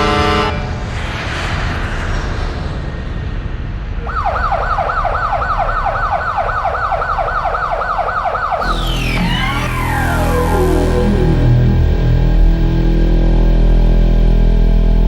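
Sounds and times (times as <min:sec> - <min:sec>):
goal siren warbling: 0:04.1 - 0:12.7.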